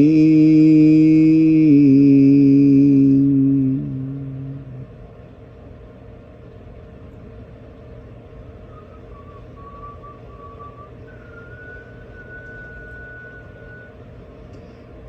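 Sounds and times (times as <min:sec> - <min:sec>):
low drone: 0:00.0 - 0:05.1, 0:08.3 - 0:15.0.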